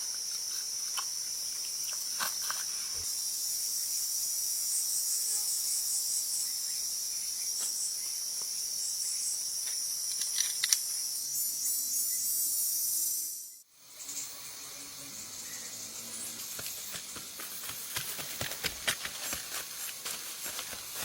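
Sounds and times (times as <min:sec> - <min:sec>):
high-pitched insect chorus: 0:00.0 - 0:21.0
sharp clicks: 0:09.7 - 0:10.9.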